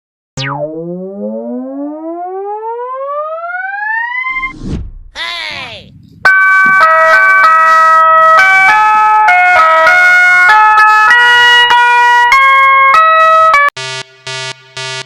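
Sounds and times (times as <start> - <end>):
electronic vehicle horn melody: 6.3 - 15.0.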